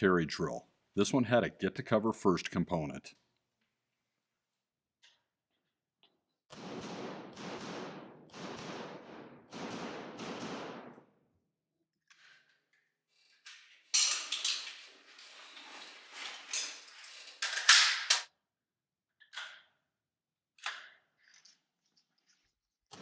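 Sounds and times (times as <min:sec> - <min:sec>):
pistol shots: 0:06.5 - 0:11.1.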